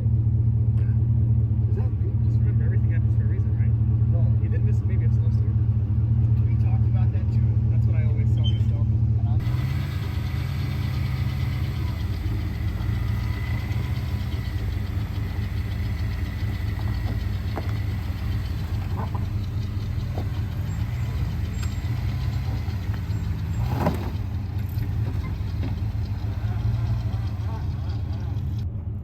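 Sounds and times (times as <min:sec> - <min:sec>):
motor vehicle rumbling: 0:00.0 - 0:29.0
light ticks: 0:10.2 - 0:28.6.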